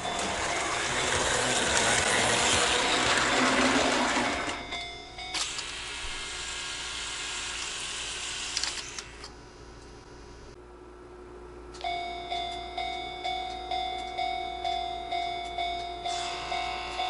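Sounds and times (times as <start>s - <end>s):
railroad crossing warning bell: 0.0s - 3.6s, 4.2s - 5.5s, 11.8s - 17.0s.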